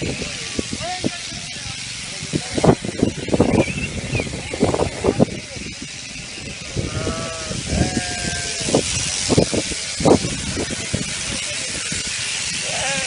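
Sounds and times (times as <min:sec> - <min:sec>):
shearing machine hiss: 0:00.0 - 0:13.0
sheep bleating: 0:06.8 - 0:08.8.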